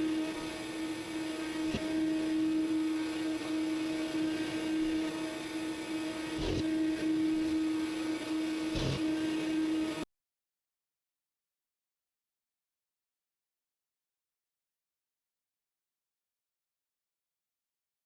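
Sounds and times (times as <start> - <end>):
cnc router spindle humming: 0.0 - 10.1.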